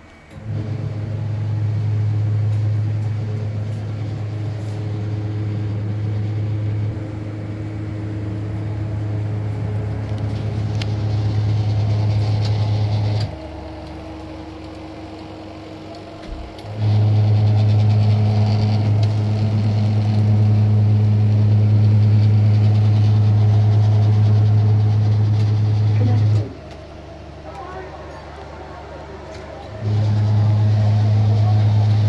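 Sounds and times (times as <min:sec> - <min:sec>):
engine humming: 0:00.0 - 0:32.0.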